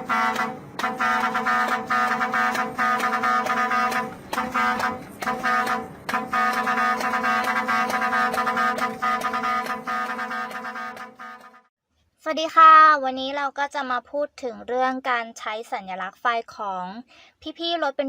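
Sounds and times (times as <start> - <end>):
brassy horn blasts: 0.0 - 11.7.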